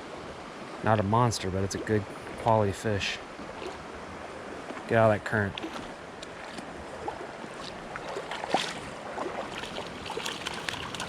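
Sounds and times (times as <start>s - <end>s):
creek water running: 0.0s - 11.0s
small splashes: 3.4s - 3.9s, 5.5s - 11.0s.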